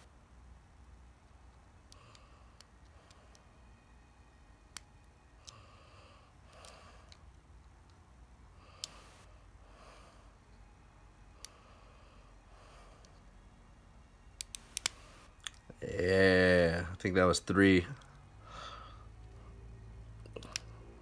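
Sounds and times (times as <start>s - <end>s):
breathing through the nose: 11.4s - 13.2s, 18.4s - 19.5s
lock pick metallic clicks: 14.4s - 15.6s, 20.3s - 20.8s.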